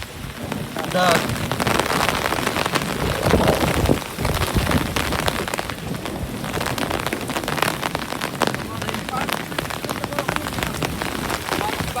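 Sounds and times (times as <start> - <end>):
hailstones pelting down: 0.0 - 12.0
low rumble: 1.7 - 7.0.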